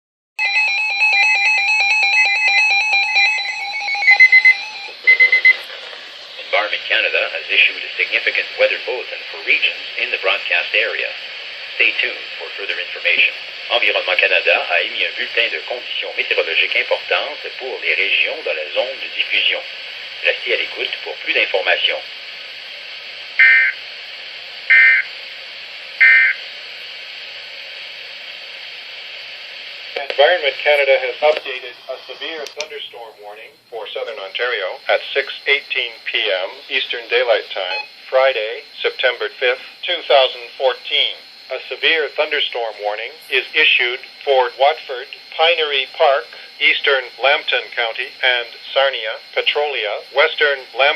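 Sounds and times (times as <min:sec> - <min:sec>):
pulsing multi-pitch alarm tone: 0:00.4 - 0:05.6, 0:23.4 - 0:23.8, 0:24.7 - 0:25.1, 0:26.0 - 0:26.4
digital data tone bursts: 0:00.5 - 0:05.7, 0:23.4 - 0:23.8, 0:24.7 - 0:25.1, 0:26.0 - 0:26.4, 0:33.8 - 0:50.9
radio hiss: 0:04.6 - 0:50.9
quick high beeps: 0:24.7 - 0:25.1, 0:26.0 - 0:26.4.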